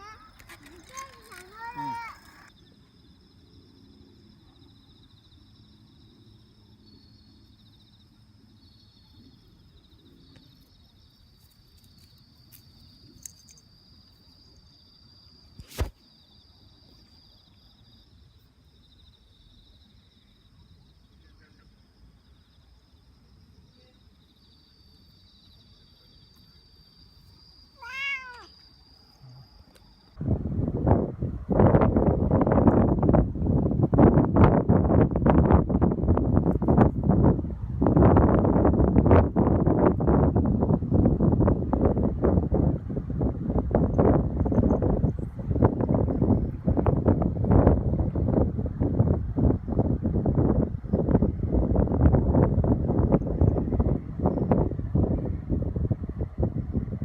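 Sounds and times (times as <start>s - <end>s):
cat meowing: 27.8s - 28.6s.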